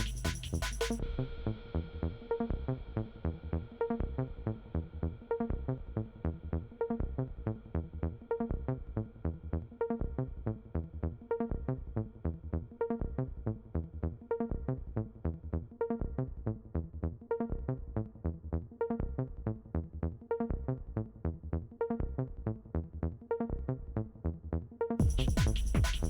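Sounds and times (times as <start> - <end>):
electronic music with beat: 0.0 - 1.2, 25.0 - 26.0.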